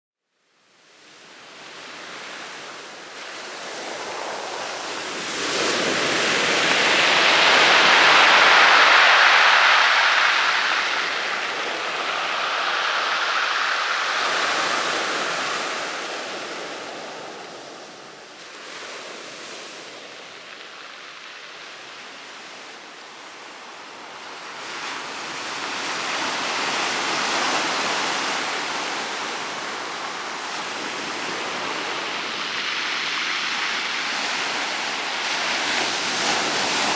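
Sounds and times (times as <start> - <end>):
sea waves breaking on pebbles: 3.2 - 22.5.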